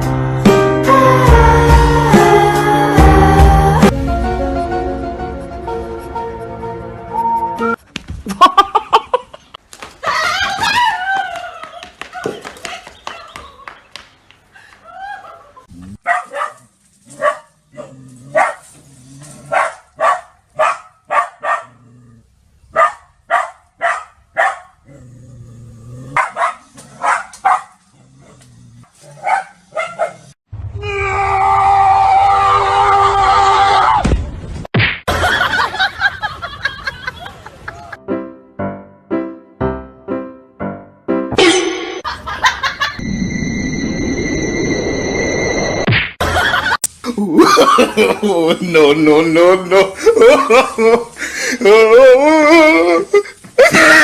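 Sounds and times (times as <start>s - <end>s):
dog barking: 15.1s - 18.7s, 19.5s - 21.8s, 22.7s - 24.8s, 26.2s - 27.8s, 29.1s - 30.4s.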